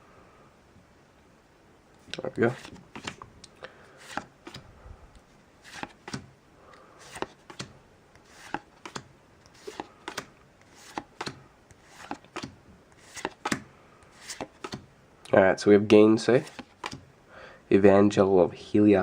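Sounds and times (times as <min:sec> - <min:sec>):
cards being flipped: 0:02.1 - 0:03.3, 0:04.0 - 0:04.7, 0:05.6 - 0:14.9, 0:16.4 - 0:17.1.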